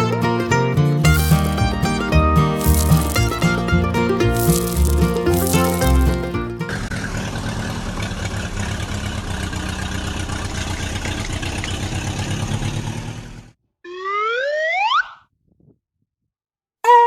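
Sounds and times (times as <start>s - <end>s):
music: 0.0s - 6.9s.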